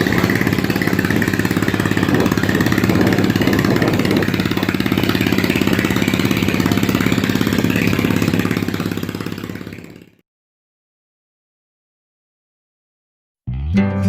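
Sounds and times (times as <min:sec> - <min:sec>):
diesel engine throbbing: 0:00.0 - 0:10.2.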